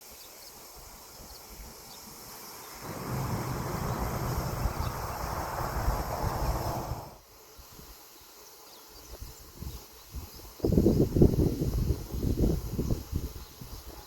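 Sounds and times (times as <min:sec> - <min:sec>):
insects chirping: 0:00.1 - 0:09.2
loud rushing noise: 0:02.8 - 0:07.2.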